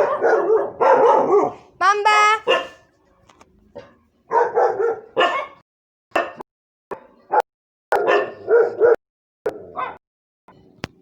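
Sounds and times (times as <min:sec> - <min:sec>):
dog barking: 0:00.0 - 0:01.7, 0:02.4 - 0:02.9, 0:03.8 - 0:05.6, 0:07.3 - 0:09.0, 0:09.7 - 0:10.0.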